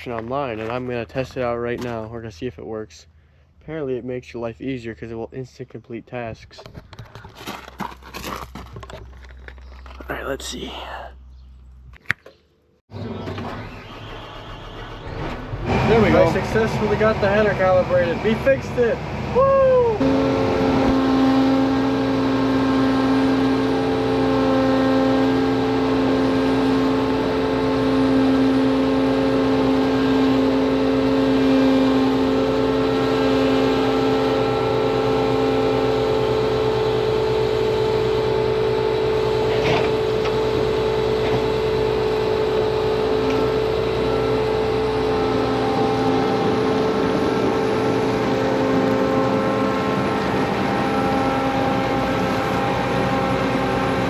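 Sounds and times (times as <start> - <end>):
combine harvester engine running: 20.0 - 54.0.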